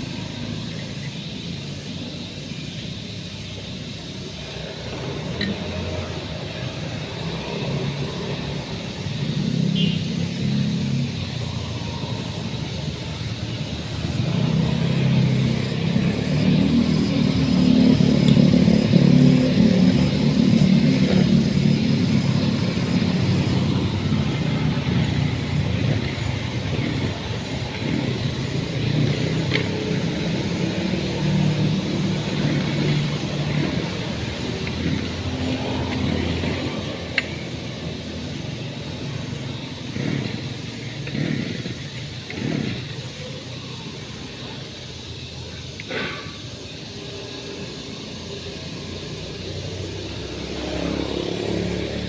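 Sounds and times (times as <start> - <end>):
engine running: 0.0 - 52.0.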